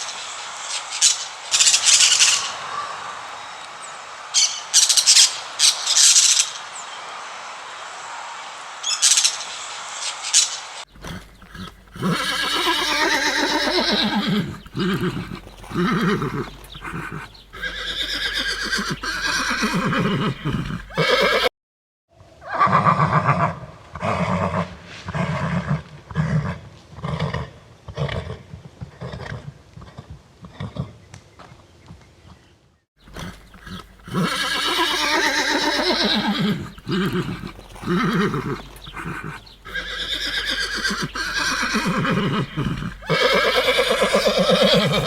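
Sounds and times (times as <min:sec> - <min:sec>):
horse whinnying: 0:11.0 - 0:21.5, 0:33.1 - 0:45.0.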